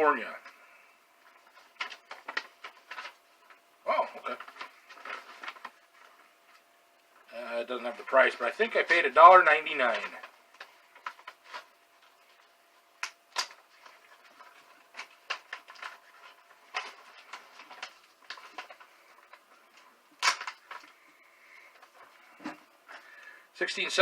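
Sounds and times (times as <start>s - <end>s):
packaging rustling: 1.2s - 6.6s, 9.8s - 22.7s.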